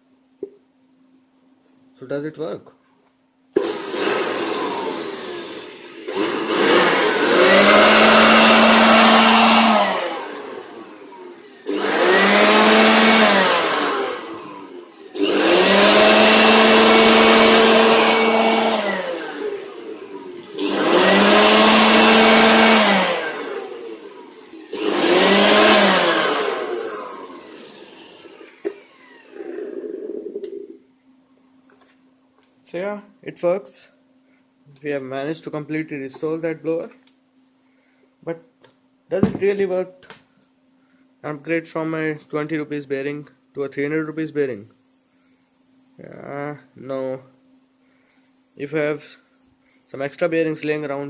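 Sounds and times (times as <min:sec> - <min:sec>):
electric leaf blower whine: 0:03.6 - 0:30.8.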